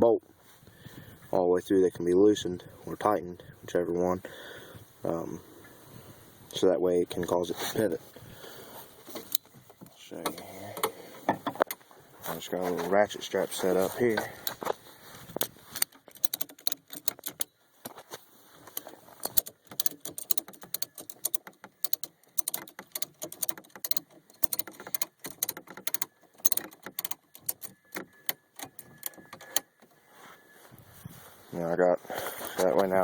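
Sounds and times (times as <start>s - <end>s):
ratchet strap clicking: 15.3s - 17.5s, 18.7s - 29.8s.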